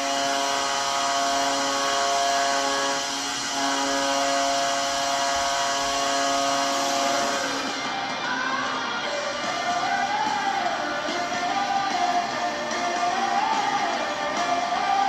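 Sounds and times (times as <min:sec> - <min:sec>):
arena goal horn blast: 0:00.0 - 0:07.8.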